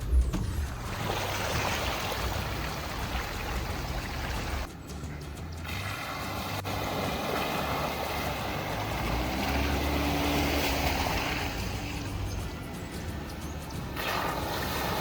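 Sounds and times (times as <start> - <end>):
water rushing: 0.0 - 4.7, 5.6 - 15.0
car engine running: 0.0 - 14.0.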